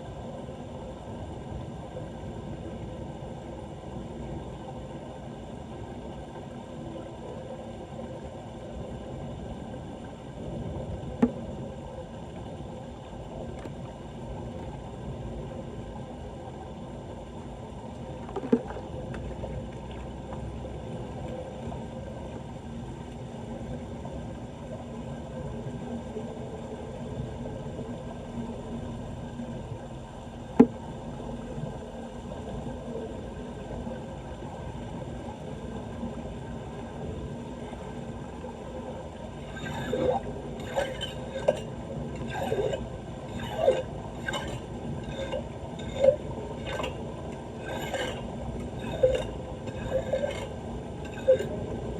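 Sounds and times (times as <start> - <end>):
flood water rushing: 39.3 - 51.5.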